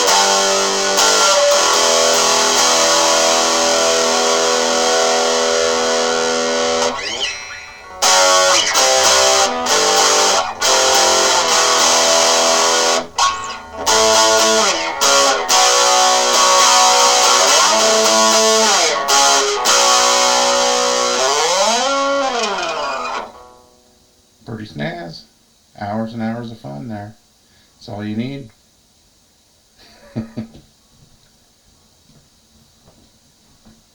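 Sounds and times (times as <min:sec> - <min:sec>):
distorted electric guitar: 0:00.0 - 0:23.9.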